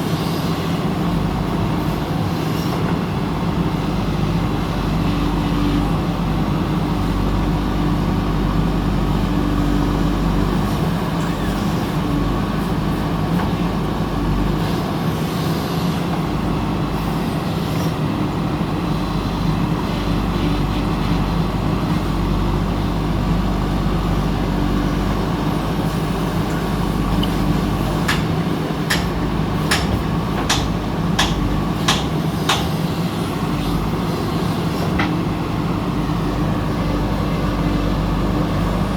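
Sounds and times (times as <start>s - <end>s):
diesel engine running: 3.0s - 38.9s
sharp knocks: 28.9s - 32.7s.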